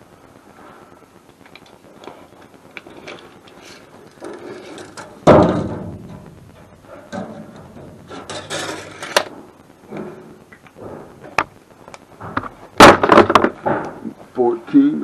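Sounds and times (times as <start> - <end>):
loud bang: 5.2 - 11.3, 12.3 - 13.8.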